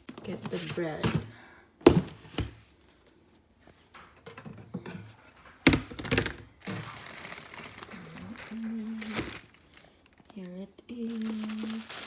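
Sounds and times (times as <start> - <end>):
knocks and clicks in kitchen: 0.0 - 2.6, 3.9 - 6.6
plastic bread bag crinkling: 5.6 - 12.0.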